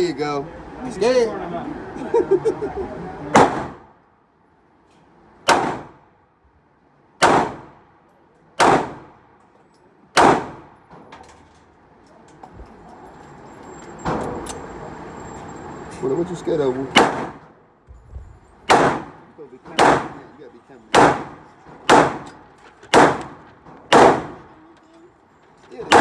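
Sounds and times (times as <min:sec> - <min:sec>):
handgun shots: 0:03.4 - 0:03.8, 0:05.5 - 0:06.0, 0:07.2 - 0:07.8, 0:08.6 - 0:09.1, 0:10.2 - 0:10.7, 0:17.0 - 0:17.5, 0:18.7 - 0:19.2, 0:19.8 - 0:20.2, 0:20.9 - 0:24.5.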